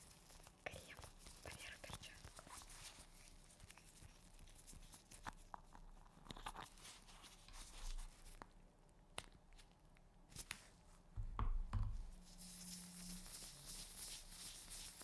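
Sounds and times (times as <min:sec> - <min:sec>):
gloved hands rustling: 0:12.3 - 0:15.0.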